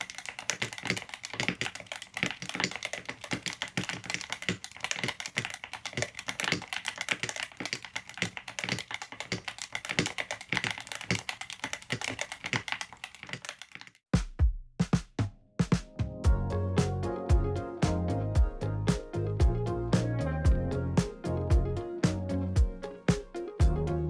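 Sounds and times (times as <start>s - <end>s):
mechanical keyboard typing: 0.0s - 14.0s
music: 14.5s - 24.0s.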